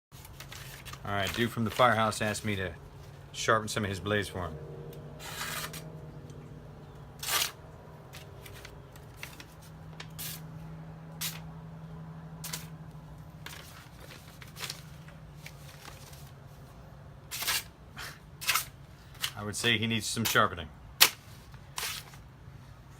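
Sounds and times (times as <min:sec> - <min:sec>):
steady low hum: 0:00.2 - 0:22.9
knives scraping: 0:05.2 - 0:05.9, 0:07.2 - 0:09.4, 0:17.3 - 0:19.4, 0:21.0 - 0:22.2.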